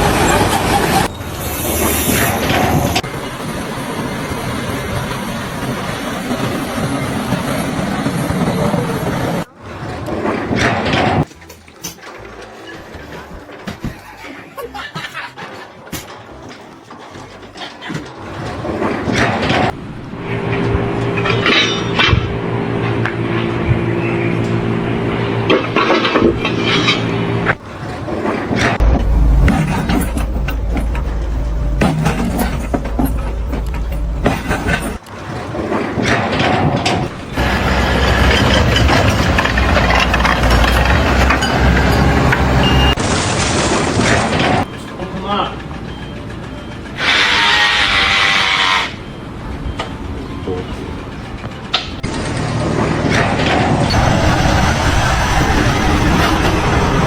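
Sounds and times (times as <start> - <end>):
engine running: 17.2 - 57.0
bursts of clatter: 28.2 - 44.8.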